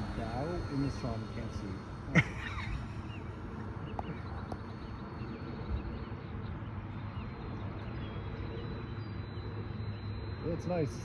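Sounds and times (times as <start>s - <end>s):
distant electric motor whine: 0.0s - 11.0s.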